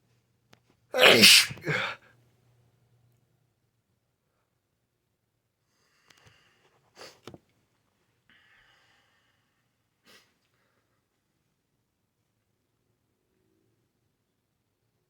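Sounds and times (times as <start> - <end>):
breathy exhale: 1.0 - 2.0
person hitching breaths: 1.0 - 2.0
stifled sneeze bursts: 1.0 - 2.0.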